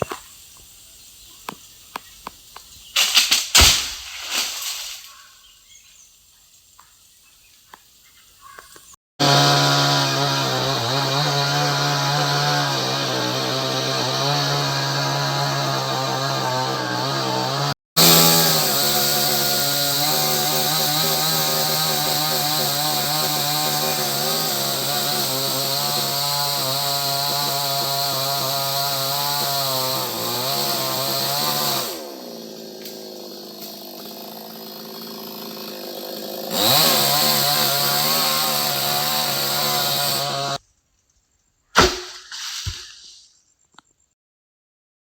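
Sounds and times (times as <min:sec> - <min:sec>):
chainsaw running: 0:09.2 - 0:40.6
sharp knock: 0:41.8 - 0:42.2.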